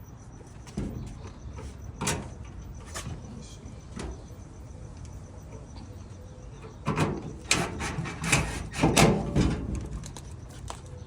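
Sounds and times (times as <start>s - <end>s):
metal parts clattering and scraping: 6.6s - 10.4s.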